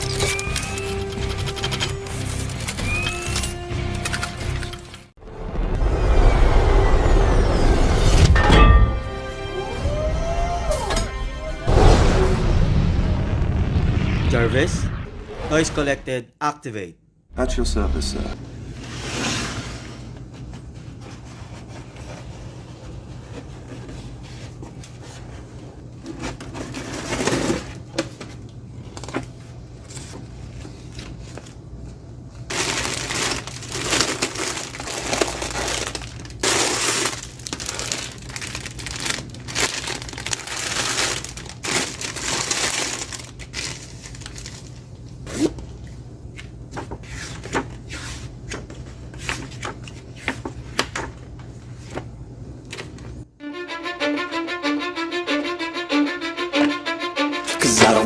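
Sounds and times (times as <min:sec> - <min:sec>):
packaging crinkling and rustling: 0:32.4 - 0:45.6.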